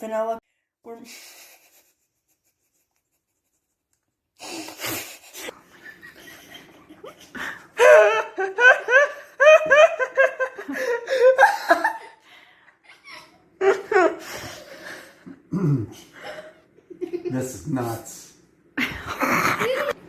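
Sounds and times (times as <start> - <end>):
person laughing hard: 4.9 - 12.2, 12.9 - 15.1.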